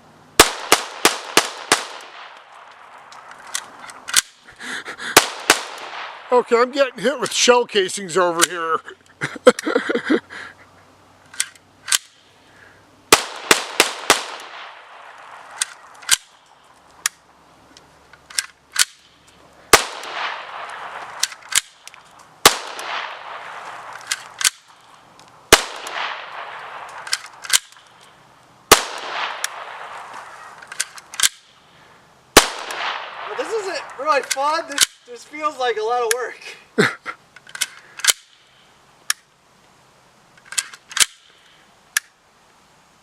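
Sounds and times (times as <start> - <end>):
gunshots with echo: 5.1 - 6.3, 13.1 - 15.0.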